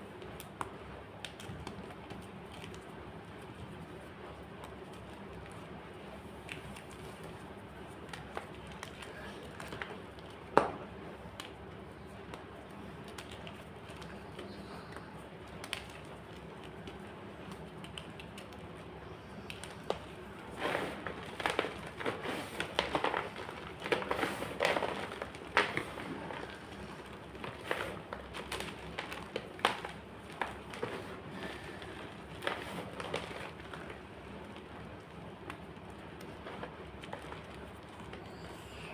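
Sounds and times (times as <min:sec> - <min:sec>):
chalk crunching and crackling: 0:11.2 - 0:38.6.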